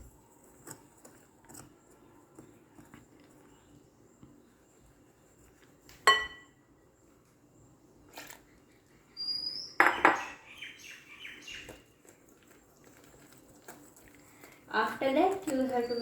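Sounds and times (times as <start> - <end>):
dishes and utensils clinking: 6.0 - 6.6, 9.8 - 10.4.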